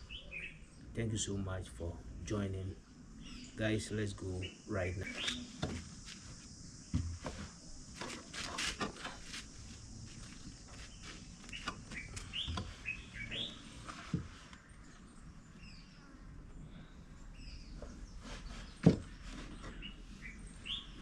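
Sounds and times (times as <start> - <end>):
birds chirping: 0.0 - 8.3, 9.0 - 21.0
steady outdoor hiss: 0.0 - 21.0
thumps: 6.9 - 9.3, 18.7 - 19.8.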